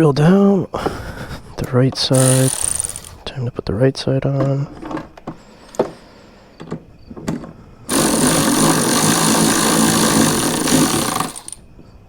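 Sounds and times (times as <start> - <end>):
handheld power tool running: 2.1 - 3.2, 7.9 - 11.6.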